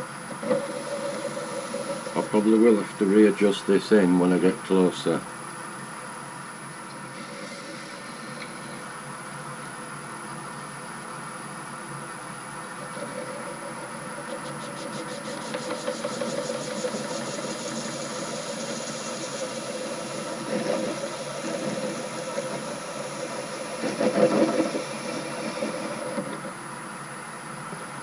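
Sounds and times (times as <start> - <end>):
metal lathe cutting metal: 0.0 - 5.2, 6.9 - 9.8, 12.7 - 26.7.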